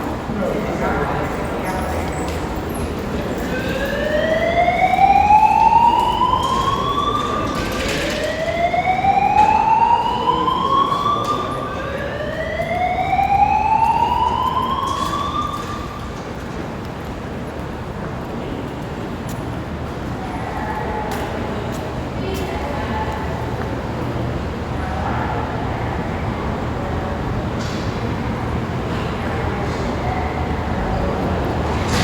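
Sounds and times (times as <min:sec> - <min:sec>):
fire alarm rising whoops: 0:03.4 - 0:16.3.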